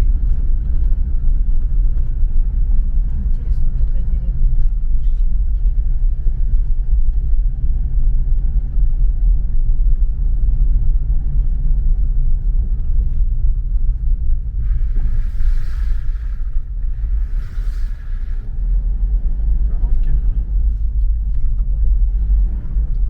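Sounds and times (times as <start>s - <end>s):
car road and engine rumble: 0.0s - 23.0s
hiss: 14.6s - 18.5s.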